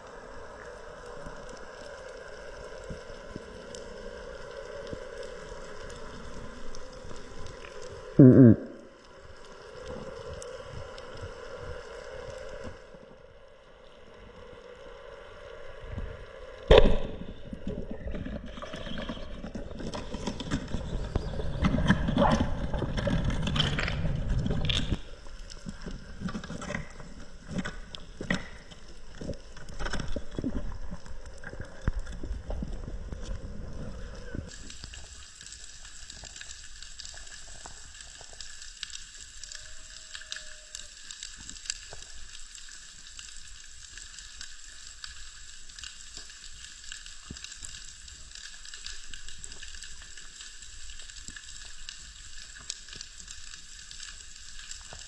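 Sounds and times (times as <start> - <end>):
water sloshing and gurgling: 16.7 - 34.5.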